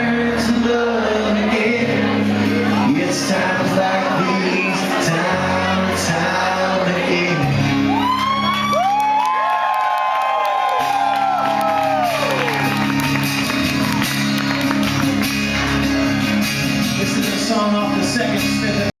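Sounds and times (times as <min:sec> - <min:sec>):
crowd shouting and cheering: 0:00.0 - 0:18.9
live band music: 0:10.9 - 0:18.9.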